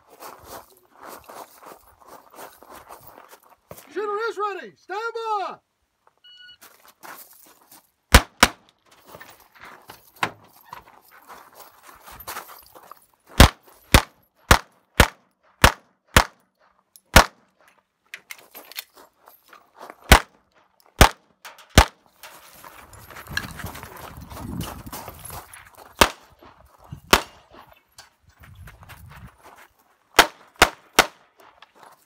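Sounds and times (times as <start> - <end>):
shot timer beep: 6.3 - 6.6
pistol shots: 8.1 - 8.6, 13.4 - 16.4, 17.1 - 17.4, 21.0 - 22.0, 26.0 - 26.3, 27.1 - 27.4, 30.2 - 31.3.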